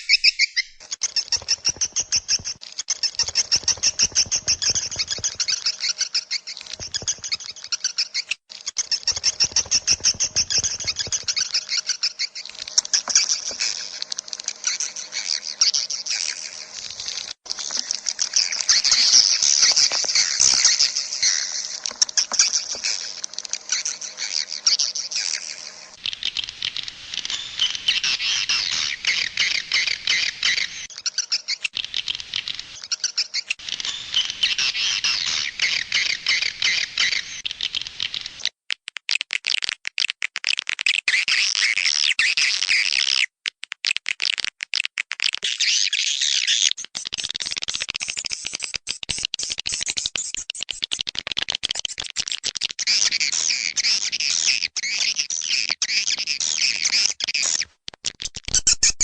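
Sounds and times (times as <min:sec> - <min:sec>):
swiftlets twittering: 0:00.0 - 0:26.4.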